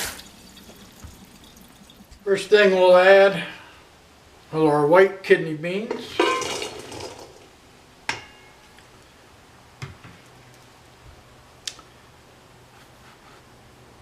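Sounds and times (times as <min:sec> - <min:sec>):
beans clinking in a metal pot: 0:05.9 - 0:07.4.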